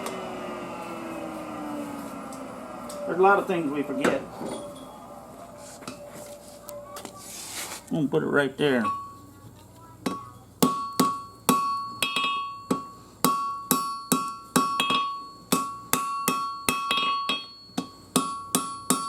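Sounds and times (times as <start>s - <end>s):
hammer striking steel on anvil: 10.0s - 19.0s.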